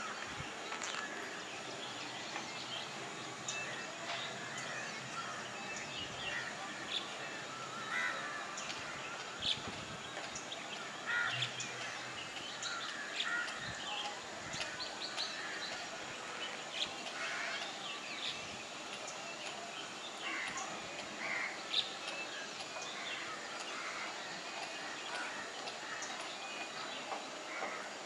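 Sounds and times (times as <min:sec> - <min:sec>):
outdoor background noise: 0:00.0 - 0:28.0
crow-like bird calls: 0:07.8 - 0:09.0.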